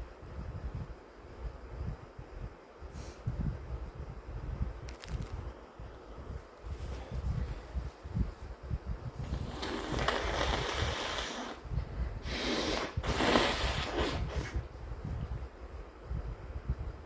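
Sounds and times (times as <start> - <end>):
person blowing nose: 9.2 - 14.7.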